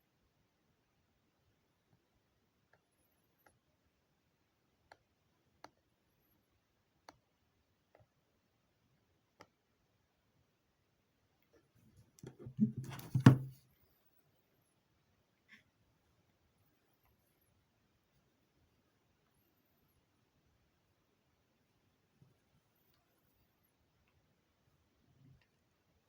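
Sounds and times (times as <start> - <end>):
knocking and rustling handling noise: 12.0 - 13.6
loud thump: 12.6 - 13.6.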